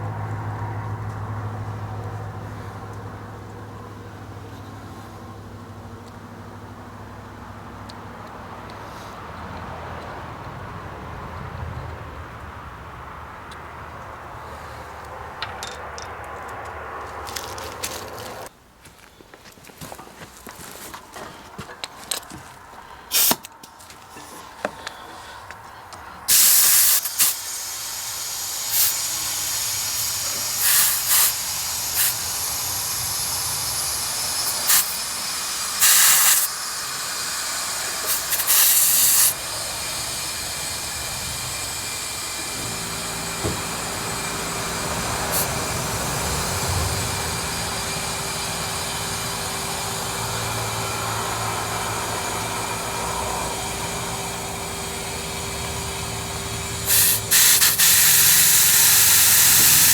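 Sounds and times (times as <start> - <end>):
compressed air hissing: 23.1 - 23.4, 26.3 - 59.9
loud air blasts: 23.1 - 23.5, 26.3 - 59.9
machine hum with held tone: 27.0 - 59.9.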